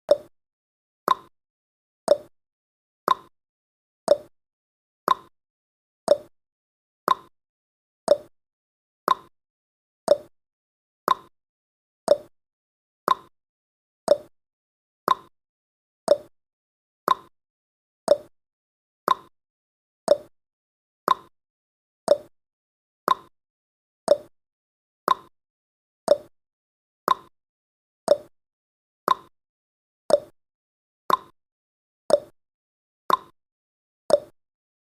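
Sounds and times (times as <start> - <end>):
timer ticking: 0.1 - 0.3, 1.1 - 1.3, 2.1 - 2.3, 3.1 - 3.3, 4.1 - 4.3, 5.1 - 5.3, 6.1 - 6.3, 7.1 - 7.3, 8.1 - 8.3, 9.1 - 9.3, 10.1 - 10.3, 11.1 - 11.3, 12.1 - 12.3, 13.1 - 13.3, 14.1 - 14.3, 15.1 - 15.3, 16.1 - 16.3, 17.1 - 17.3, 18.1 - 18.3, 19.1 - 19.3, 20.1 - 20.3, 21.1 - 21.3, 22.1 - 22.3, 23.1 - 23.3, 24.1 - 24.3, 25.1 - 25.3, 26.1 - 26.3, 27.1 - 27.3, 28.1 - 28.3, 29.1 - 29.3, 30.1 - 30.3, 31.1 - 31.4, 32.1 - 32.4, 33.1 - 33.4, 34.1 - 34.4.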